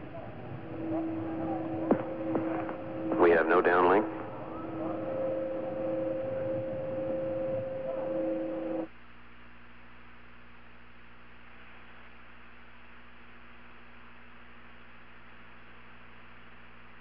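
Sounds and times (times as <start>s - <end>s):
hissing broadcast audio: 0.0s - 8.9s
steady tones: 0.0s - 8.9s
low electrical hum: 0.0s - 17.0s.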